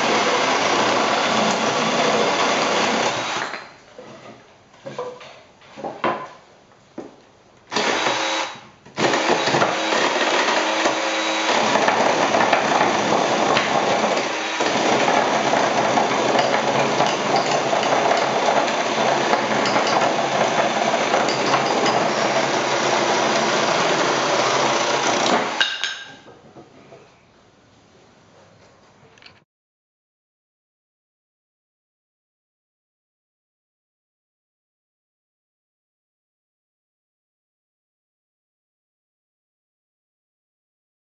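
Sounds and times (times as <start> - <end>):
battery chainsaw running: 0.0 - 3.4, 7.8 - 25.6.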